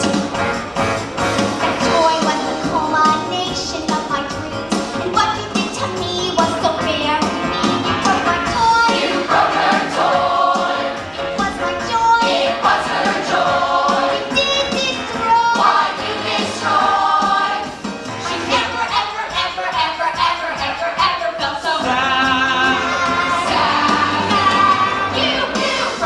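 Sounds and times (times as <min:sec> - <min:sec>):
instrumental accompaniment: 0:00.0 - 0:26.0
voices singing together: 0:08.0 - 0:26.0.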